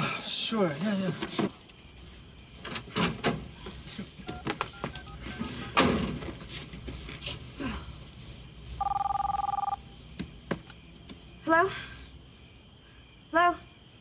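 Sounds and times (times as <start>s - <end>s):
telephone two-tone ring: 8.8s - 9.8s.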